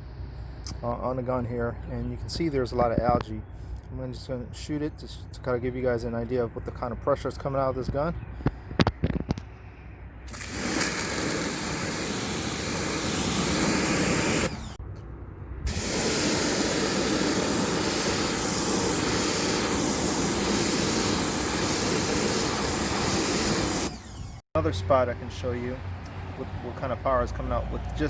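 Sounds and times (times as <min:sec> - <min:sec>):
pressure washer spraying water: 0:10.3 - 0:14.8, 0:15.7 - 0:24.4.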